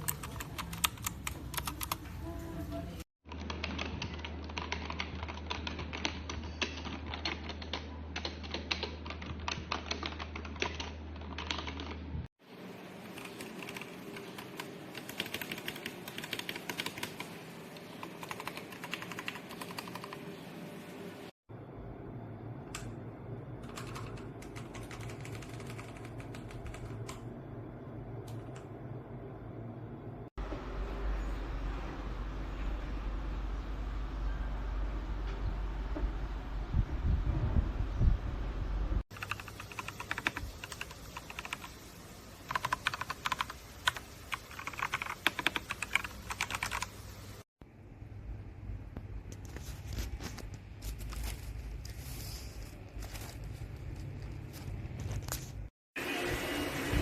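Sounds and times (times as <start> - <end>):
mechanical keyboard typing: 0.0 - 2.2, 3.3 - 12.0, 13.2 - 20.3, 23.6 - 27.2, 39.1 - 41.8, 42.5 - 47.0
steady low hum: 10.6 - 42.6.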